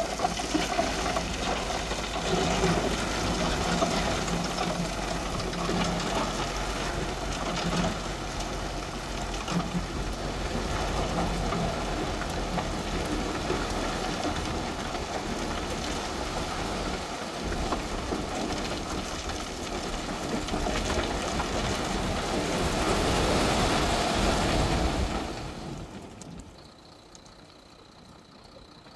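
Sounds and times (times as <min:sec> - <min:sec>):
gritty noise of earth being worked: 0:00.0 - 0:26.5
diesel engine under load: 0:00.0 - 0:27.0.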